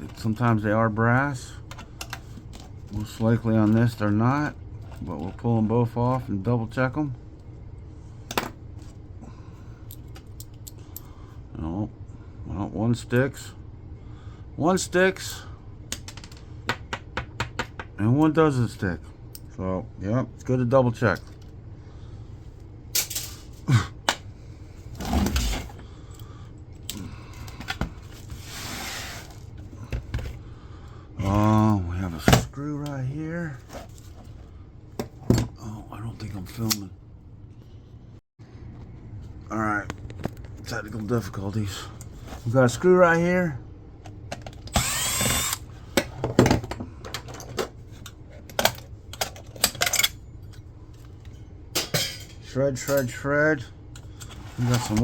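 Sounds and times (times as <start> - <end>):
steady low hum: 0.0 - 55.0
metal parts clicking and clanking: 23.0 - 23.6, 46.6 - 53.2
tool scraping: 28.1 - 29.5
cordless drill spinning: 44.7 - 45.7.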